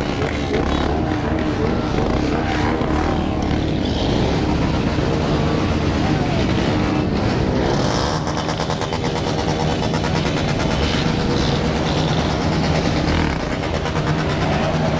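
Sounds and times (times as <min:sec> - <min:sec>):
motorcycle engines revving: 0:00.0 - 0:14.9
crackling exhaust rattle: 0:06.7 - 0:14.9.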